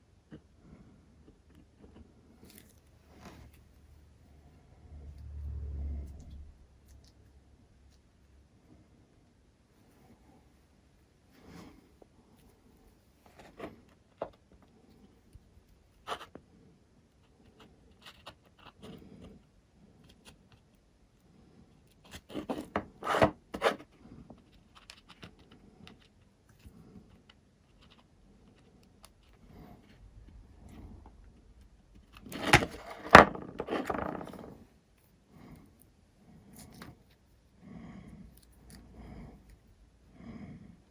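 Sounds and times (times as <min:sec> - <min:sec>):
tools handled on workbench: 0:32.1 - 0:34.6.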